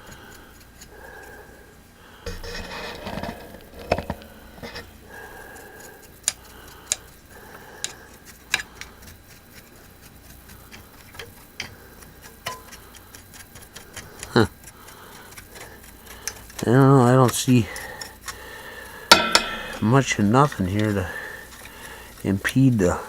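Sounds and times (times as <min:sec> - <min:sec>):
light clicks and taps of tools: 0:05.5 - 0:22.6.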